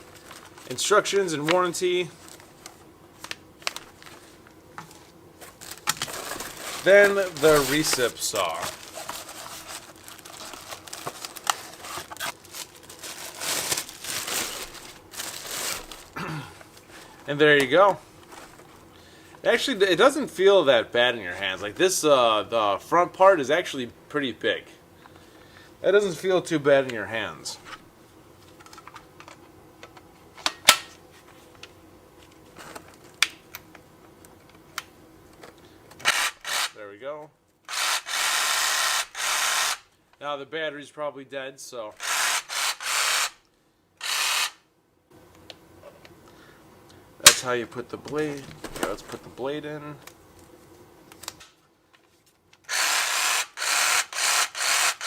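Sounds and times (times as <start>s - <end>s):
packaging crinkling and rustling: 0.0s - 18.8s.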